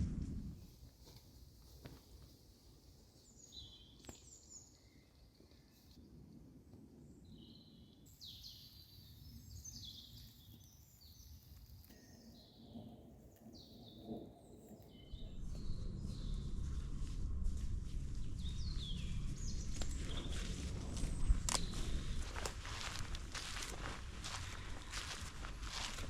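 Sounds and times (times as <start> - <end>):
birds chirping: 7.4 - 26.0
low rustling: 15.1 - 26.0.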